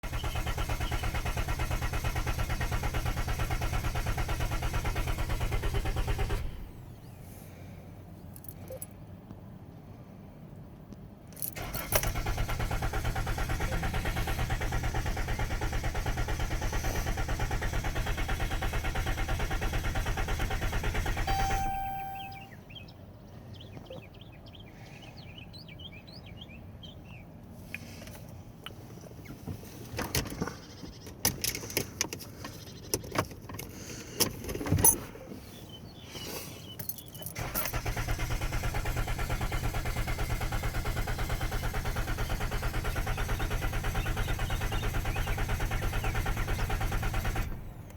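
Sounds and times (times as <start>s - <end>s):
engine cranking without starting: 0.0s - 7.0s, 11.4s - 22.5s, 36.8s - 47.9s.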